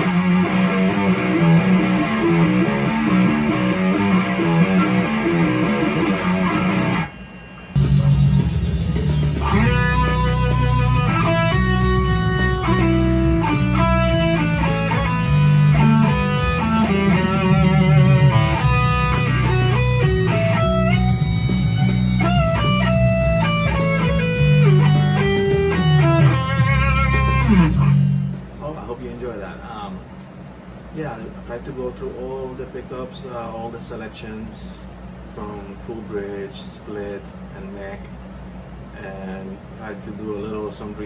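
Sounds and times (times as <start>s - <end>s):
electric guitar lead solo: 0.0s - 7.2s, 9.4s - 28.2s
low sustained accompaniment: 0.0s - 28.4s.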